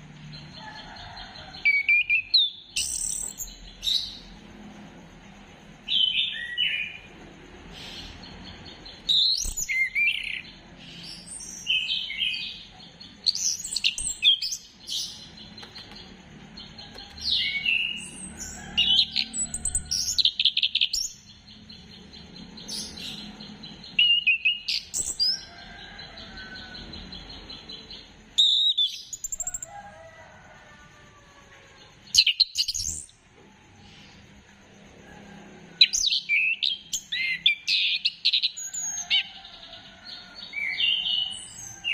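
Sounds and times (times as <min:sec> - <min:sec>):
thrush singing whistles and trills: 0:01.5 - 0:04.4, 0:05.8 - 0:16.1, 0:16.9 - 0:25.6, 0:26.5 - 0:29.7, 0:32.1 - 0:33.2, 0:35.8 - 0:39.6, 0:40.4 - 0:41.9.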